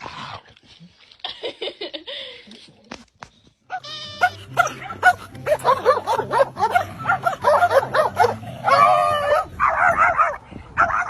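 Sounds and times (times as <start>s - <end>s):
dog yipping: 3.7s - 11.0s.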